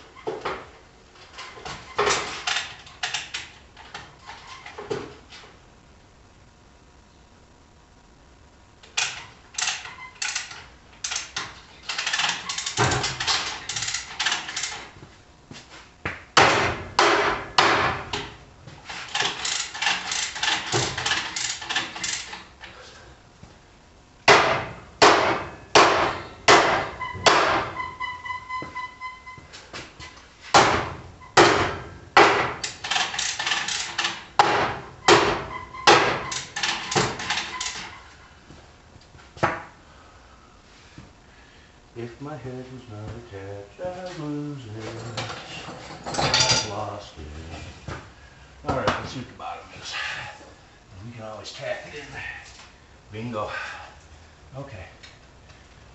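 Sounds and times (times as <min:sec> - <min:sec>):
hammer striking metal: 0:24.3 - 0:27.8.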